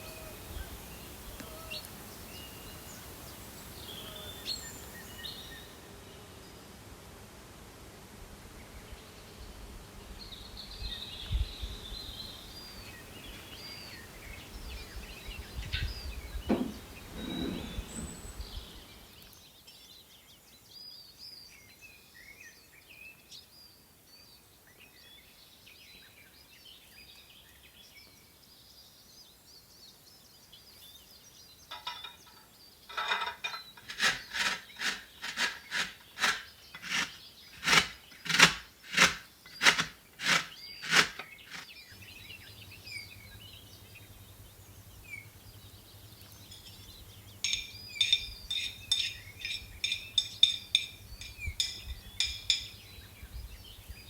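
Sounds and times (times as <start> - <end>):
small birds chirping: 0.0 - 5.8, 10.2 - 54.0
scraping strokes on hard surface: 16.5 - 18.2, 32.9 - 41.7
low outdoor ambience: 30.2 - 54.0.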